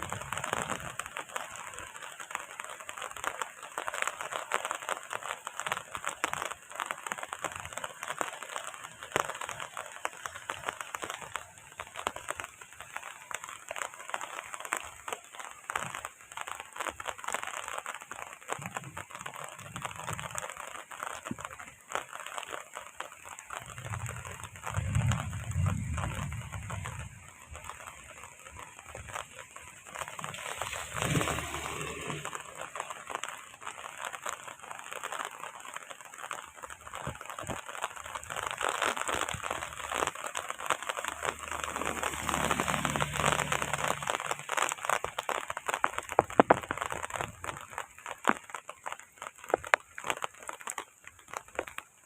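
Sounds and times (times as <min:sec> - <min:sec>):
heavy rain on hard surface: 0:00.0 - 0:52.0.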